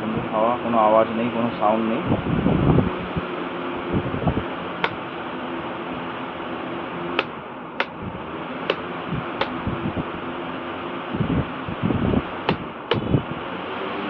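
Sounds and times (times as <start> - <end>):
airflow buffeting microphone: 0.0 - 14.0
fan air rushing: 0.0 - 14.0
sharp clicks: 7.2 - 8.0.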